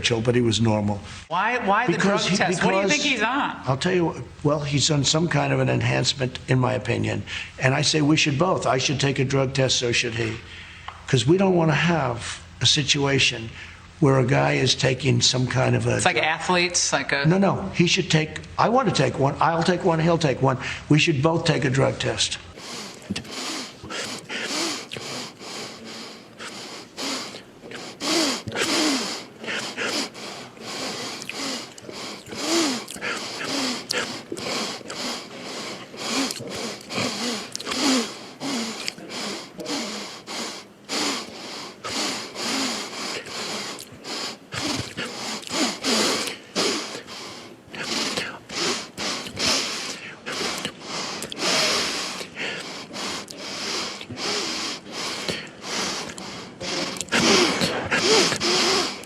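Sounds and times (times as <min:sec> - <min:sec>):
man's voice: 0:00.0 - 0:10.2
man sniffing: 0:22.5 - 0:59.0.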